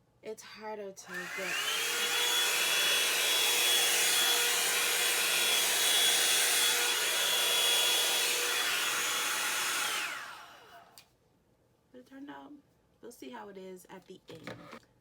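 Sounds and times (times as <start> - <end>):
hair dryer running: 1.1 - 11.0.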